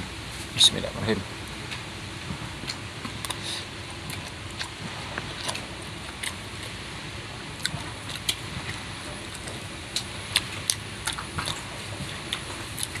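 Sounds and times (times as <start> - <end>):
steady low hiss: 0.0 - 13.0
chewing and mouth smacks: 2.6 - 6.8, 7.6 - 13.0.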